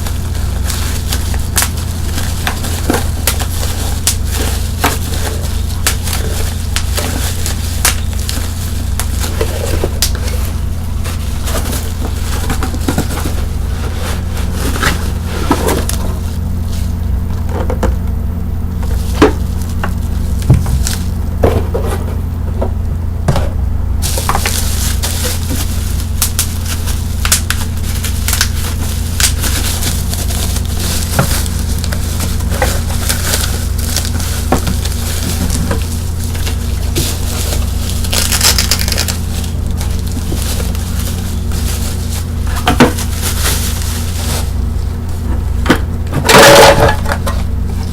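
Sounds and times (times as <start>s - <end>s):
bubble wrap pops: 0.0s - 10.5s, 24.0s - 44.6s
bubble wrap crackling: 0.0s - 17.3s, 18.6s - 21.4s, 24.0s - 47.9s
steady low hum: 0.0s - 47.9s.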